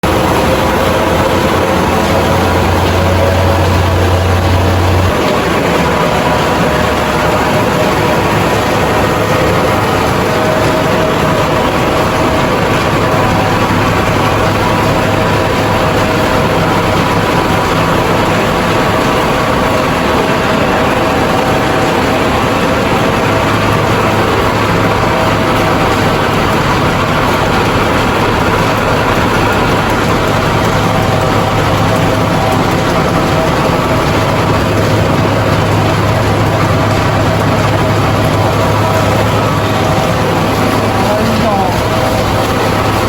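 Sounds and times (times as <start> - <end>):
rice milling machine running: 0.0 - 43.0.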